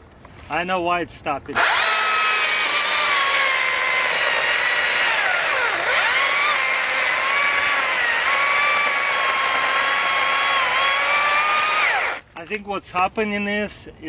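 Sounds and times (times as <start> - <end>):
electric chainsaw motor whine: 1.6 - 12.3.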